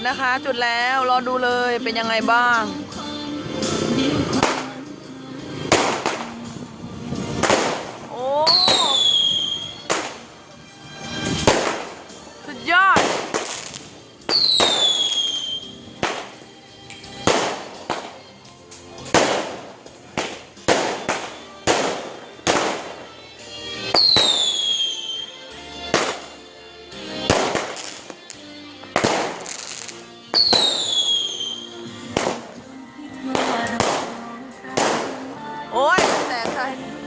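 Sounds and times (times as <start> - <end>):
fireworks bangs: 5.6 - 10.2, 11.2 - 16.4, 17.1 - 18.2, 19.0 - 23.1, 23.8 - 25.2, 25.9 - 26.4, 27.2 - 32.6, 33.3 - 35.3, 35.9 - 36.7
falling firework whistle: 8.5 - 9.8, 14.3 - 15.8, 24.0 - 25.3, 30.4 - 31.8.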